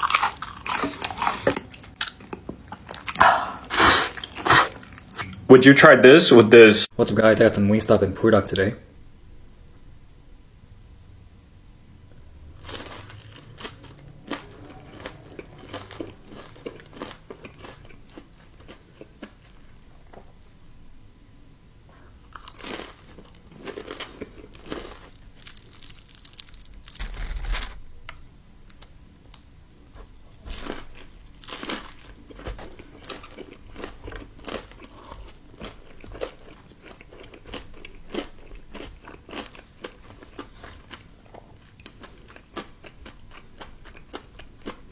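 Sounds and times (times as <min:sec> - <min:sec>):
chewing: 0:00.0 - 0:05.4, 0:12.6 - 0:19.6, 0:29.9 - 0:44.9.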